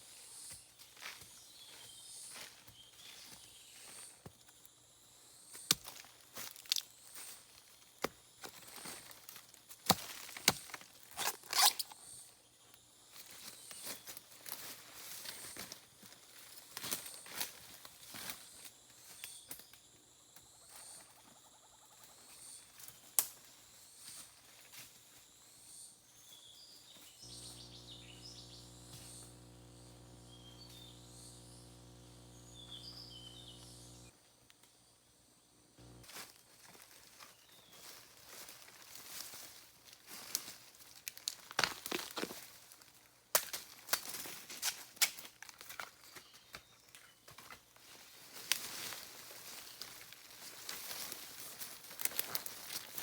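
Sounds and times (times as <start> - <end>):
insects chirping: 0.0 - 42.9
twigs snapping and leaves rustling: 5.7 - 7.4, 8.0 - 12.0, 35.8 - 53.0
low steady hum: 27.2 - 36.1.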